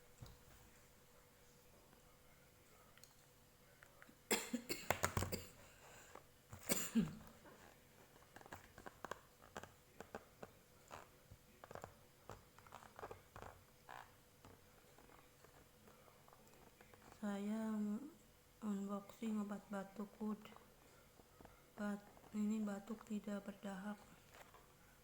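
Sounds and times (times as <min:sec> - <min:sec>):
person coughing: 0:04.3 - 0:05.7, 0:06.6 - 0:07.3.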